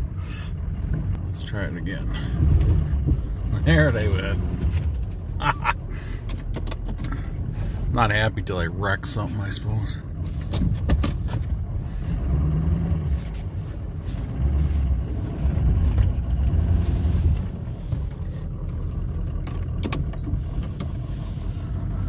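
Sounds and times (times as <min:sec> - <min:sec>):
truck engine revving under load: 0:00.0 - 0:07.9, 0:11.4 - 0:22.0.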